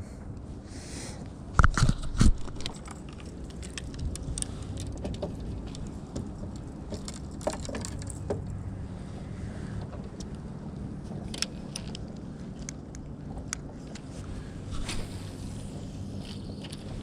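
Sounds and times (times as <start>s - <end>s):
low steady rumble: 0.0s - 17.0s
light clicks and taps: 2.5s - 8.6s, 9.8s - 14.1s.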